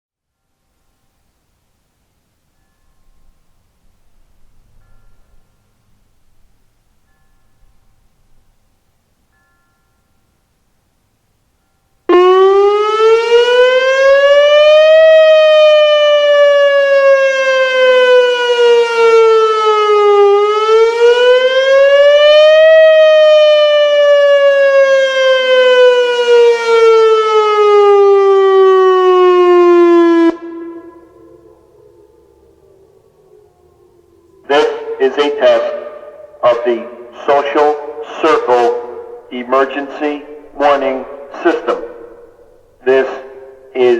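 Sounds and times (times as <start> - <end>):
outdoor warning siren wailing: 12.0 - 43.9.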